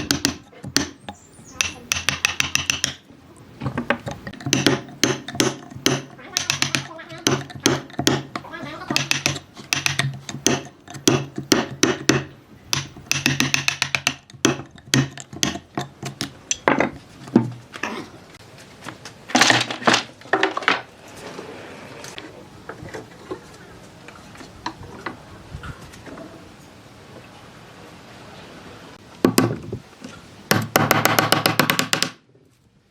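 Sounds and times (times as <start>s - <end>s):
hand tools knocking on wood: 0.0s - 17.6s, 30.5s - 32.2s.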